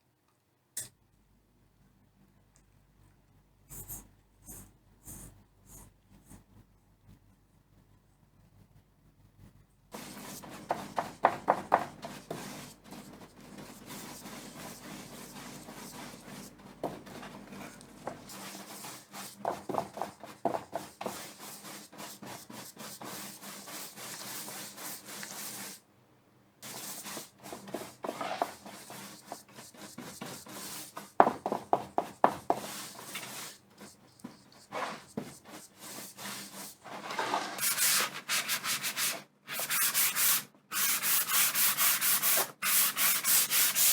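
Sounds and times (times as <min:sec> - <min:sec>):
scraping on wood: 0:36.8 - 0:37.8
sanding strokes: 0:37.6 - 0:43.9.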